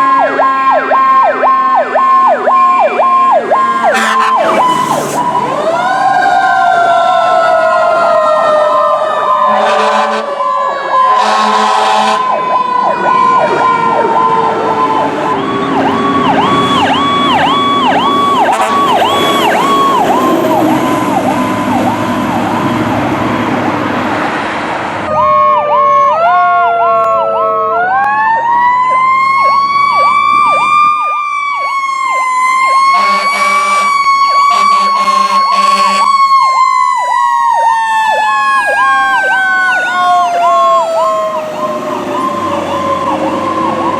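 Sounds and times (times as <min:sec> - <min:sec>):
rapid pulsing siren: 0:00.0 - 0:23.2, 0:25.1 - 0:43.9
sirens wailing up and down: 0:00.0 - 0:43.9.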